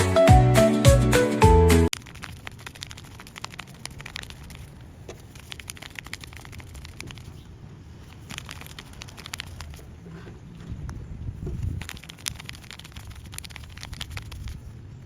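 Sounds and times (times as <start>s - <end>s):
paper toy crinkling: 1.9s - 7.4s, 8.0s - 9.9s, 11.6s - 14.8s.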